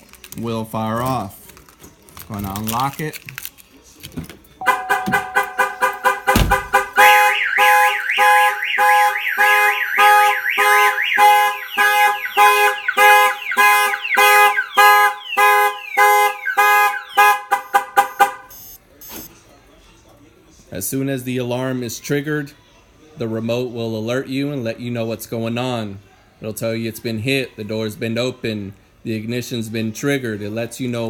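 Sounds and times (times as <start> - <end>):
truck horn honking: 4.6 - 18.6
car alarm siren warbling: 4.6 - 19.3
heavy thump: 4.9 - 7.0.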